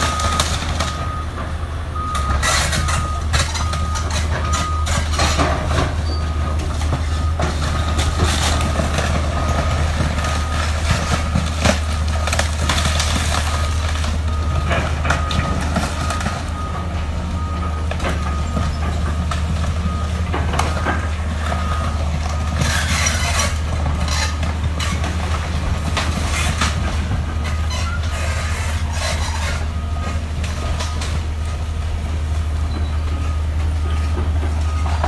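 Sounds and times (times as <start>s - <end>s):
heavy demolition machinery: 0.0s - 35.0s
debris knocking and crashing: 2.8s - 16.7s.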